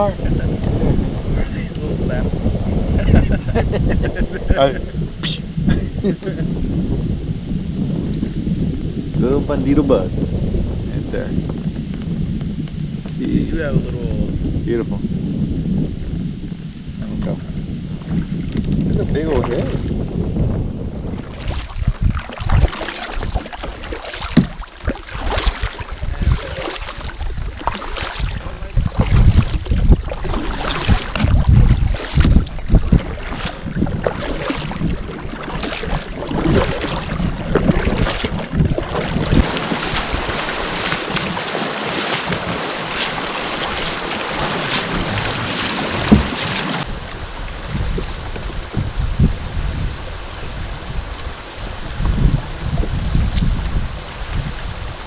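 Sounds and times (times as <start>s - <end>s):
water noise: 0.0s - 55.0s
wind buffeting microphone: 0.0s - 55.0s
knocks and rumbles: 45.9s - 46.9s.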